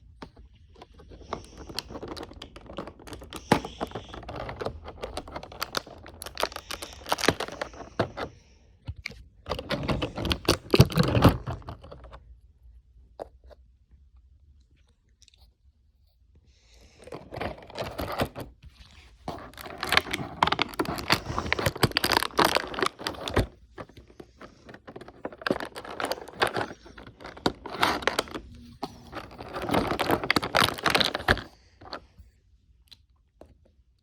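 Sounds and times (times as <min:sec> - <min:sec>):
packaging crinkling and tearing: 0:00.8 - 0:08.3, 0:09.5 - 0:12.0, 0:17.0 - 0:32.0.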